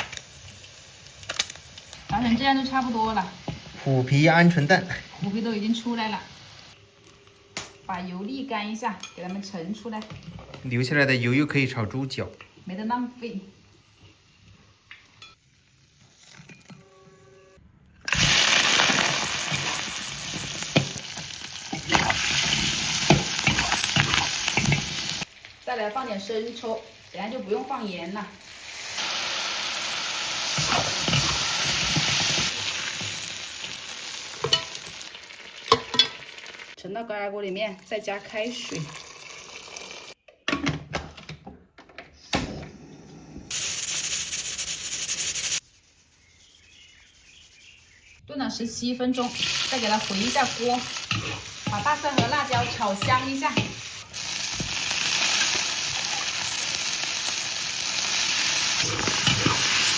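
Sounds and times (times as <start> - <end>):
food sizzling in hot oil: 0.0 - 8.8, 9.8 - 16.6, 18.1 - 36.8, 37.8 - 40.2, 43.5 - 45.6, 49.1 - 59.9
pressure cooker steam hissing: 28.8 - 33.0, 43.5 - 45.6, 49.2 - 59.9.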